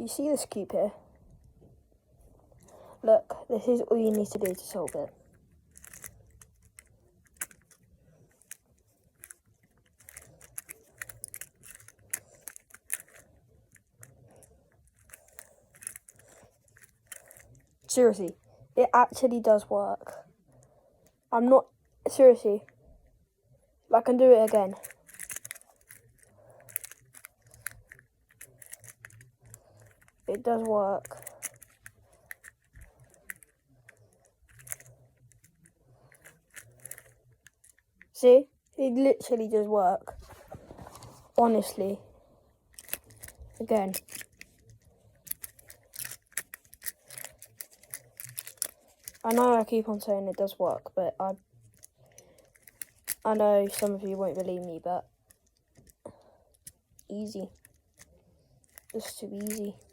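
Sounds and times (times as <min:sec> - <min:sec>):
plastic puzzle cube clicking: 0:03.6 - 0:18.4, 0:24.4 - 0:38.2, 0:42.7 - 0:50.6, 0:51.2 - 0:59.9.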